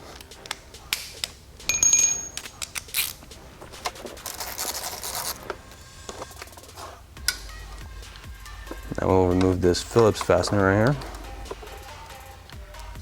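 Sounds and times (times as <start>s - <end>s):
scratchy rasp: 2.9s - 8.8s.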